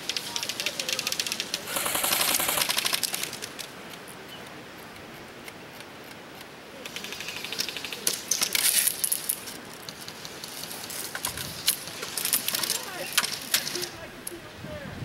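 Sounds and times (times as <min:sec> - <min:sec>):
airsoft guns firing: 0:01.7 - 0:03.3.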